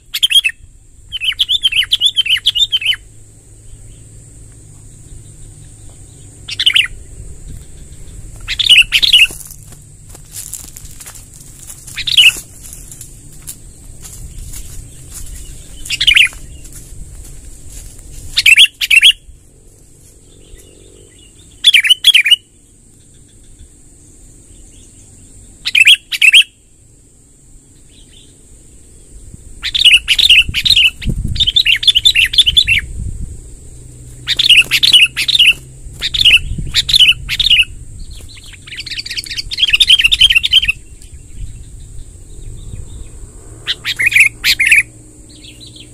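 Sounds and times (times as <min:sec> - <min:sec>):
bulbul chirping: 0:00.0 - 0:03.1, 0:05.0 - 0:09.5, 0:11.9 - 0:12.5, 0:15.3 - 0:16.6, 0:20.4 - 0:23.6, 0:34.3 - 0:45.9
steady high whine: 0:00.0 - 0:45.9.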